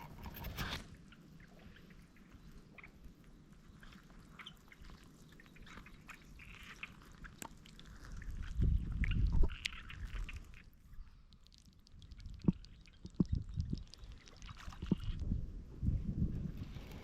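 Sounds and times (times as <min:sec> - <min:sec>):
shallow water sloshing and splashing: 0:03.7 - 0:15.3.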